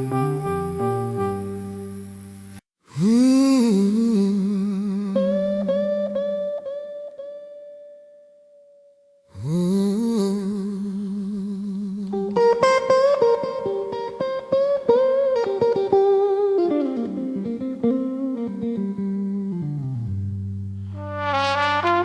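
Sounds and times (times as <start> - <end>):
strummed guitar chords: 0.0 - 2.2, 12.0 - 21.0.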